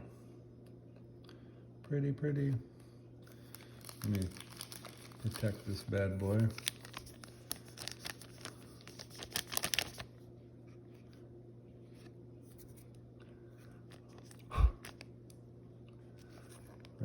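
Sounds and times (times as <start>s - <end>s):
faint low hum: 0.0s - 17.0s
plastic sleeve crinkling: 3.3s - 10.1s.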